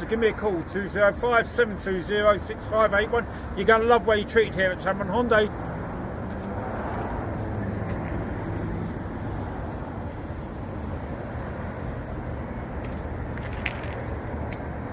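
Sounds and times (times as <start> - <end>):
low vehicle rumble: 5.5 - 14.9.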